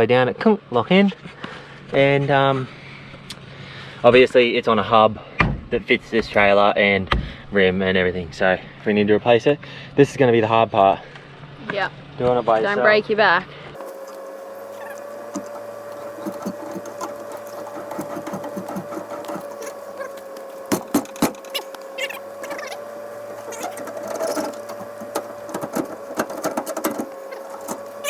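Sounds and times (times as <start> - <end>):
electric winch motor whining: 13.8 - 28.0
cable and gear clicks and knocks: 23.4 - 28.0.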